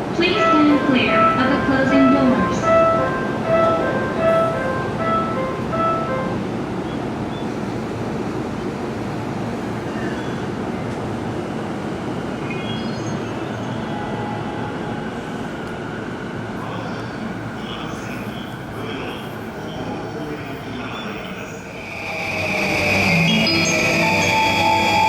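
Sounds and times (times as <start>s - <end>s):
electric train rumbling: 0.0s - 25.0s.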